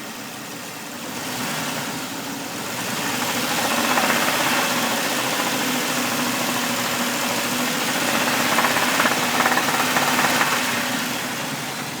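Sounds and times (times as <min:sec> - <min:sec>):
car engine running: 0:02.6 - 0:12.0
rapid engine knock: 0:02.8 - 0:11.6.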